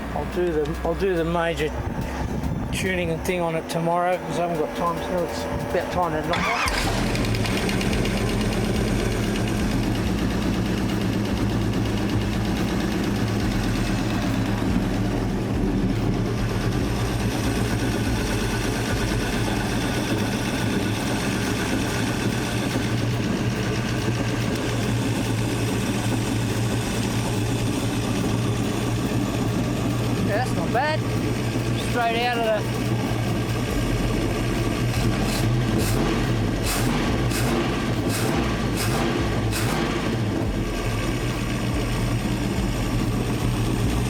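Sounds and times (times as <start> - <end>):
boat engine idling: 0.0 - 44.0.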